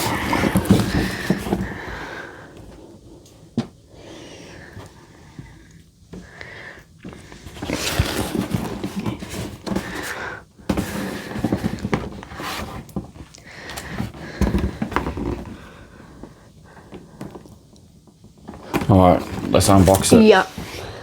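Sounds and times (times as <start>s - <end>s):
cardboard box rustling and scraping: 0.0s - 2.4s, 7.1s - 16.4s, 18.4s - 21.0s.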